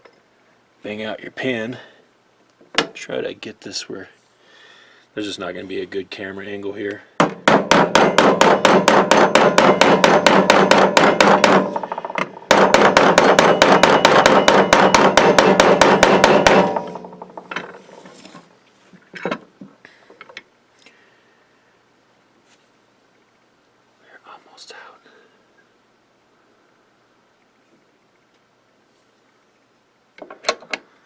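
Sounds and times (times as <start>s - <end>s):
hammer tapping metal punch: 7.2s - 17.8s.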